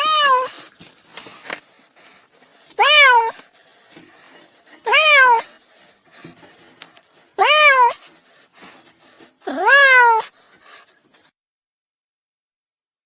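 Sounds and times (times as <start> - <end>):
kitten meowing: 0.0 - 0.5, 2.8 - 3.4, 4.8 - 5.5, 7.4 - 8.0, 9.5 - 10.2.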